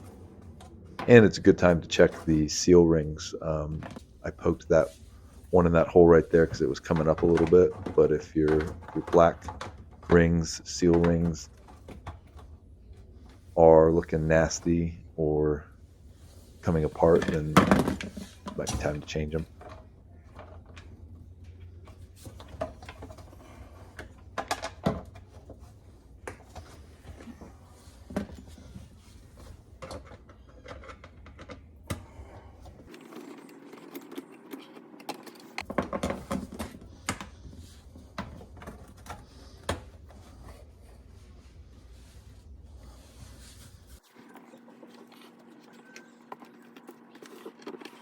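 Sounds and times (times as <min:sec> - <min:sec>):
plastic parts clicking and knocking: 0:21.8 - 0:25.6, 0:29.8 - 0:32.2, 0:32.9 - 0:40.0.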